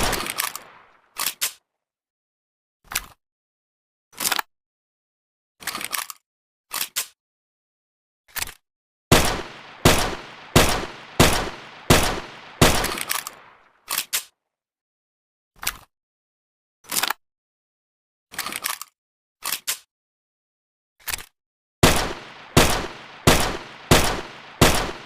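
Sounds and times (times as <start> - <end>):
pistol shots: 0.0 - 0.9, 9.1 - 13.6, 21.8 - 25.0.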